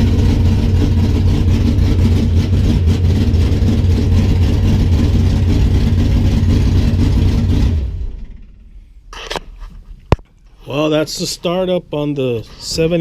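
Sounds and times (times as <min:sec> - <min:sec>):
car engine running: 0:00.0 - 0:10.2.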